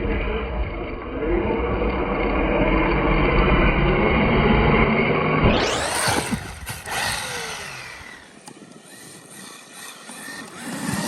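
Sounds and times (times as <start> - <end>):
electric motor whining: 5.4 - 11.0.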